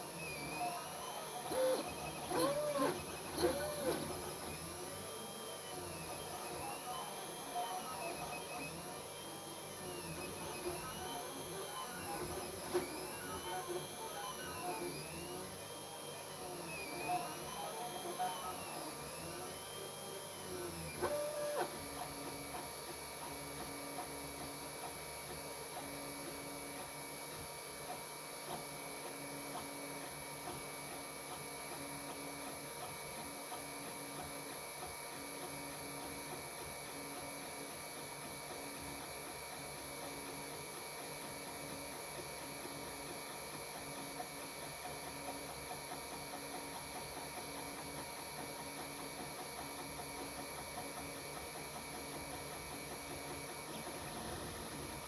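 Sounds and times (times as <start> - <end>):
stepper motors whining: 1.4 - 6.6.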